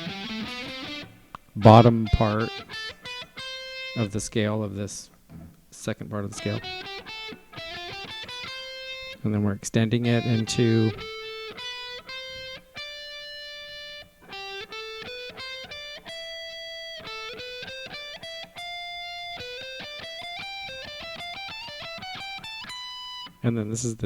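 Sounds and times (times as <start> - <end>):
guitar playing a scale: 0.0 - 4.4, 6.2 - 23.6.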